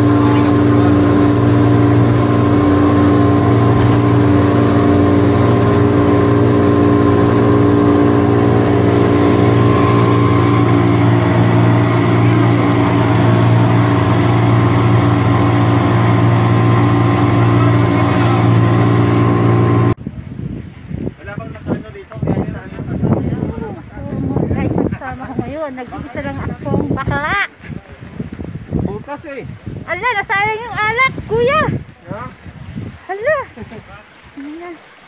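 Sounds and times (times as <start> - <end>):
boat engine drone: 0.0 - 20.0.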